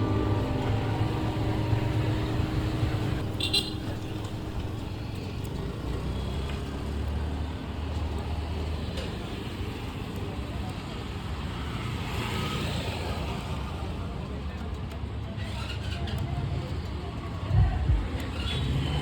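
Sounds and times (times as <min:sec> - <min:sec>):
vehicle engine rumbling: 0:00.0 - 0:09.4.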